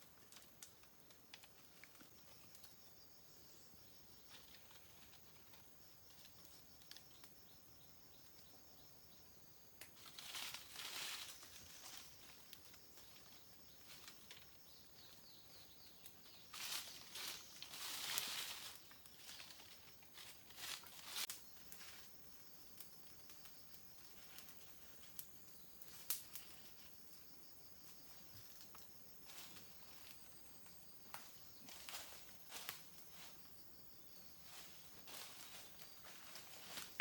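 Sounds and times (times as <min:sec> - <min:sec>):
rustling: 0:10.0 - 0:13.2, 0:16.5 - 0:21.9.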